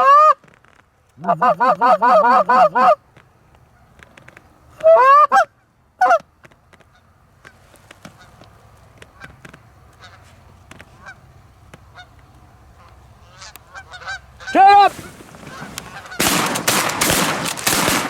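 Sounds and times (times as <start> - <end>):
goose honking: 1.2 - 3.0, 10.0 - 10.3, 11.0 - 11.2, 12.0 - 12.2, 12.8 - 16.3.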